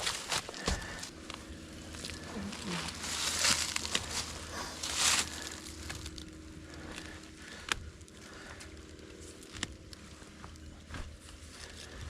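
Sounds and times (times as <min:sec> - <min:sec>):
wooden stick scraping frozen soil: 0:00.0 - 0:07.2
small crunches and ticks: 0:00.0 - 0:12.0.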